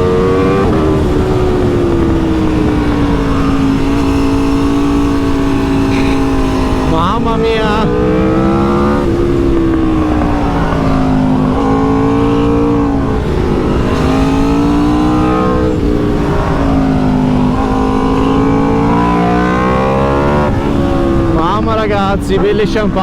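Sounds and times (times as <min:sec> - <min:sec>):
motorcycle engine revving: 0:00.0 - 0:23.0
rushing wind and road noise: 0:00.0 - 0:23.0.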